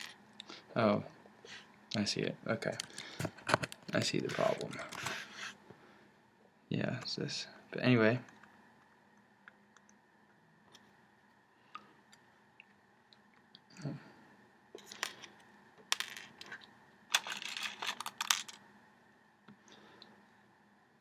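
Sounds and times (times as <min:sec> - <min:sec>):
clicks and rattles of wires: 0:02.7 - 0:05.3.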